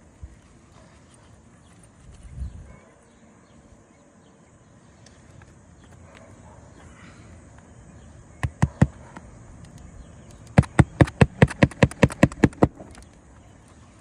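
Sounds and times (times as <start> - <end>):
hammer driving roofing nails: 10.6 - 12.8.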